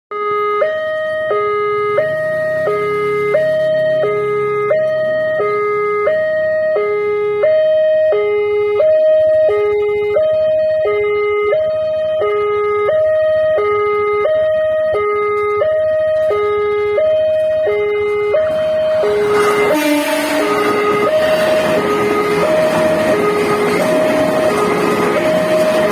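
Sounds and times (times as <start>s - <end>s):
level-crossing two-tone alarm: 0.1s - 25.9s.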